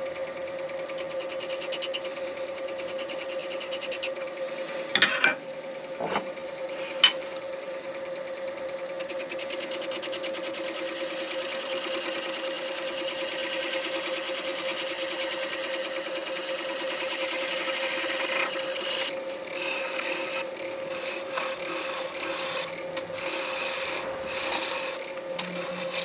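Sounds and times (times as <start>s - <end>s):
lathe humming: 0.0s - 4.6s, 6.3s - 26.0s
turning tool cutting acrylic: 0.9s - 4.1s, 9.0s - 26.0s.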